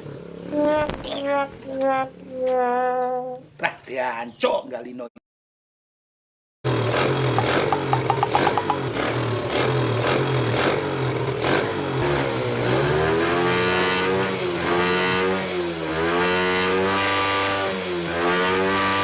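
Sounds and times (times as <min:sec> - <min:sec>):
motorcycle engine revving: 0:00.0 - 0:01.0, 0:06.7 - 0:19.0.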